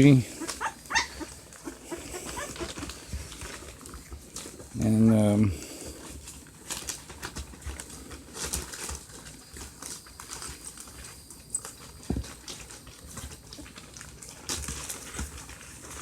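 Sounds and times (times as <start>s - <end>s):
puppies scrabbling: 0.0s - 4.8s.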